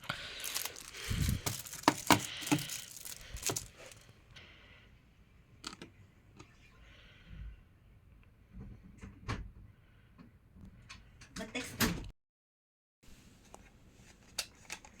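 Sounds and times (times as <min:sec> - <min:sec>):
rustling of things handled: 0:00.0 - 0:04.3.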